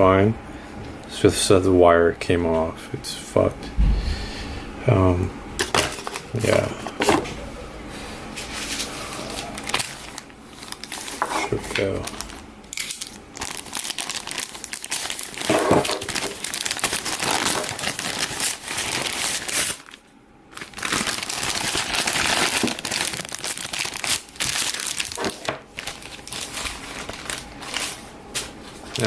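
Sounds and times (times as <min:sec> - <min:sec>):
packaging crinkling and rustling: 0:05.6 - 0:07.4, 0:08.4 - 0:29.0.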